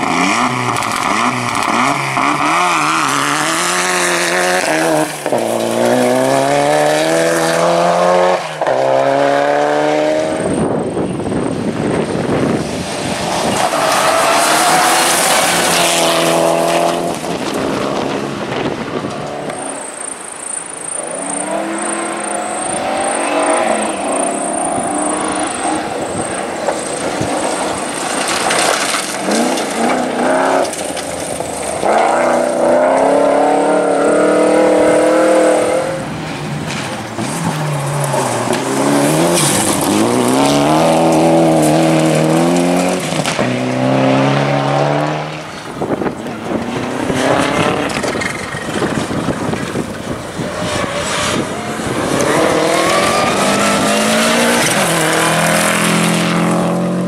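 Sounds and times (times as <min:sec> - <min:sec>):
rally car engines revving: 0:00.0 - 0:57.0
tyre squeal: 0:19.6 - 0:36.2.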